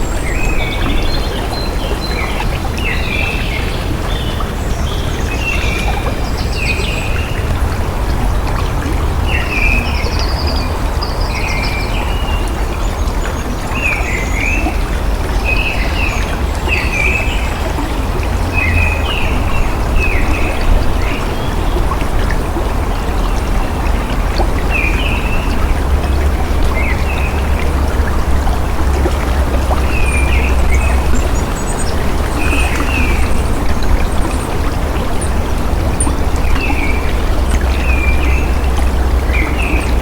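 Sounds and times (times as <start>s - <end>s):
water running: 0.0s - 40.0s
deep rumble: 14.8s - 40.0s
small birds chirping: 29.2s - 40.0s.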